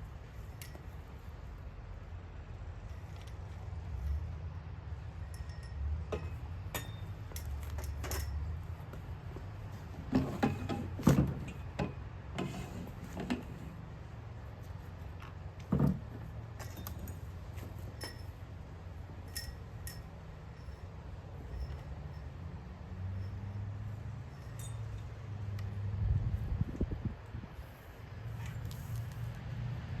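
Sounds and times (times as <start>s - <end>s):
metallic clinks of tools: 5.2s - 8.5s, 17.9s - 18.4s, 19.2s - 25.3s.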